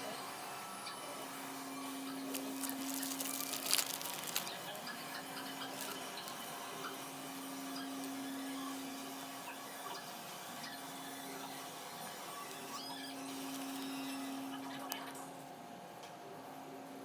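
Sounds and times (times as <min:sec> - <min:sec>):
low electrical hum: 0:00.0 - 0:09.4
plastic items tapping: 0:02.3 - 0:04.6.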